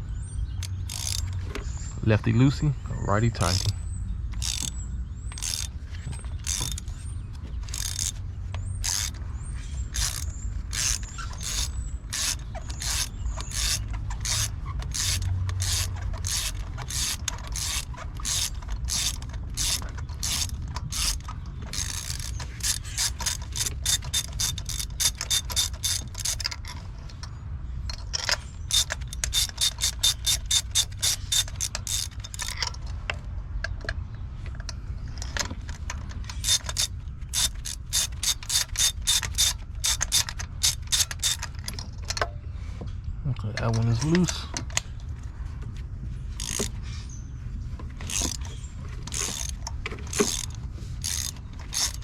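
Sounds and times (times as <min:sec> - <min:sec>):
socket ratchet clicking: 0:00.6 - 0:01.7, 0:03.2 - 0:09.2, 0:09.8 - 0:27.3, 0:27.9 - 0:33.8, 0:34.6 - 0:42.3, 0:46.4 - 0:46.8, 0:48.0 - 0:52.0.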